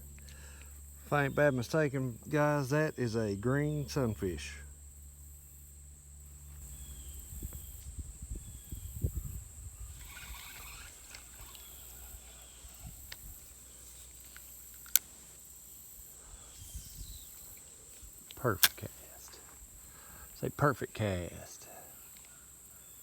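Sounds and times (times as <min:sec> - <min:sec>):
high insect drone: 0:00.0 - 0:23.0
sharp click: 0:18.3 - 0:18.9.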